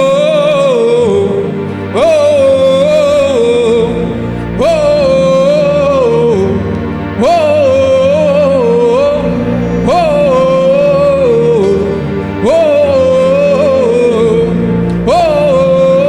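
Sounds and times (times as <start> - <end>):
person singing wordless chant: 0.0 - 16.0
sustained low accompaniment: 0.0 - 16.0.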